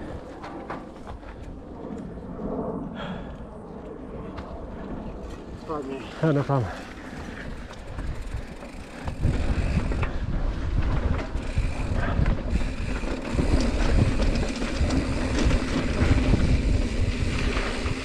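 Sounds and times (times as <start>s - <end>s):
wind buffeting microphone: 0.0s - 18.0s
bike tyres rumbling on dirt: 5.3s - 18.0s
bike rattling and knocking: 6.5s - 18.0s.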